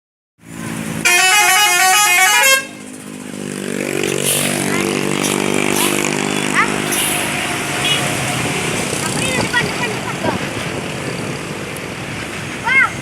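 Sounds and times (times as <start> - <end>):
multi-tone musical bus horn: 1.0 - 3.0, 7.6 - 8.3
vehicle engine running: 2.2 - 11.3.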